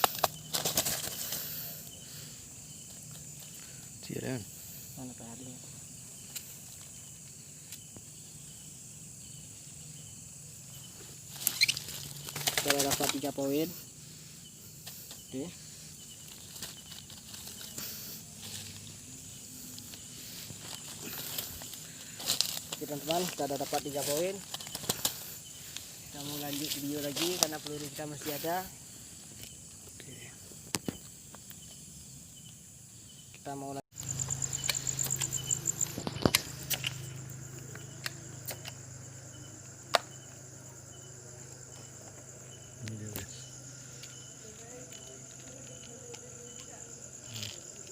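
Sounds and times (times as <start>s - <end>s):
night insects chirring: 0.0s - 47.9s
small clicks and rustles: 16.2s - 17.8s.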